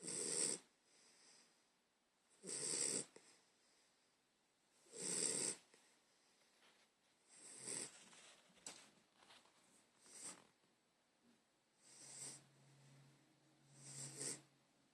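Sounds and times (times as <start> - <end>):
person snoring: 0.0 - 0.7, 2.4 - 3.2, 4.9 - 5.6, 11.8 - 12.5, 13.7 - 14.5
soft breathing: 0.8 - 1.8, 5.5 - 10.6.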